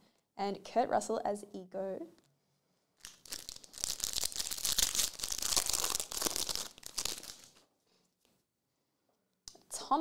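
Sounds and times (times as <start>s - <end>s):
foil wrapper crinkling and tearing: 3.0s - 7.6s.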